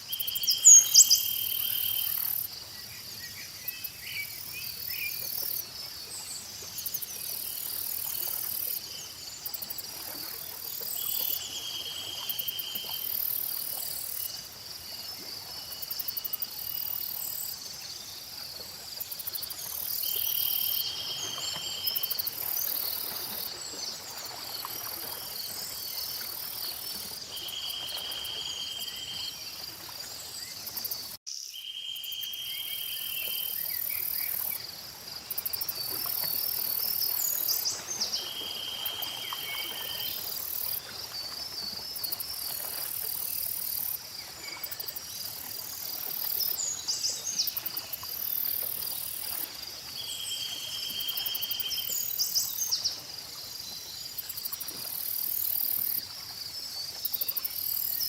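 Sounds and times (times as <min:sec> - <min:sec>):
insect trill: 0:00.0 - 0:02.6, 0:19.0 - 0:23.6, 0:24.2 - 0:58.0
insects and crickets chirring: 0:00.0 - 0:58.0
bird chirping: 0:00.1 - 0:02.4.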